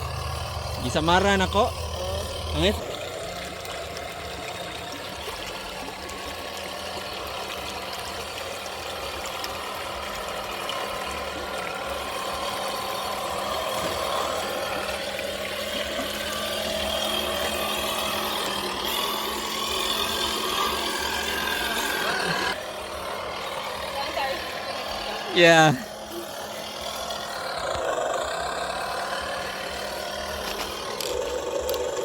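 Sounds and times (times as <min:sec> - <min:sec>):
simulated diesel engine from speaker: 0:00.0 - 0:32.0.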